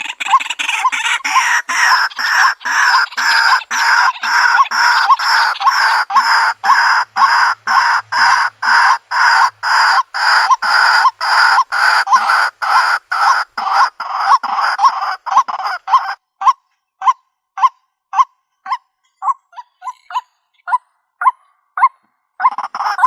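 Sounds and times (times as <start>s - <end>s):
bird harsh repeated call: 0.0s - 23.0s.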